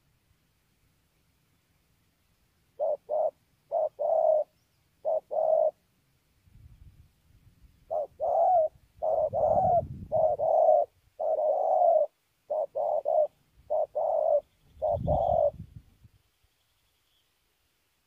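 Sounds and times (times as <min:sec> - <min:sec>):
dove cooing: 0:02.7 - 0:05.8, 0:07.8 - 0:15.7.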